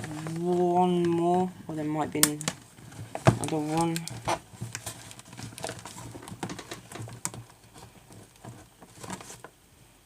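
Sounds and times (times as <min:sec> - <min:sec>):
cardboard box clicks and rustles: 0:02.9 - 0:09.6.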